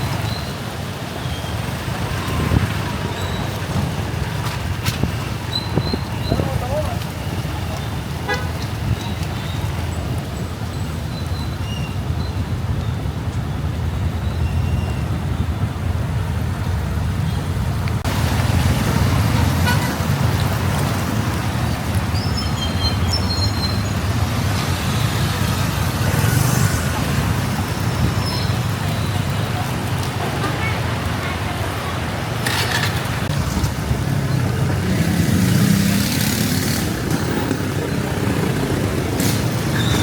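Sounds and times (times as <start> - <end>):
motorbike engine and tyre rumble: 0.0 - 40.0
road traffic noise: 0.0 - 40.0
distant horns: 6.2 - 9.9, 19.2 - 20.3.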